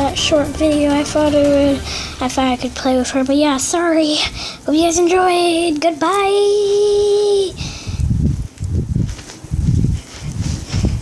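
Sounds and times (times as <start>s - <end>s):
muffled rumbling and rustling: 8.0s - 11.0s.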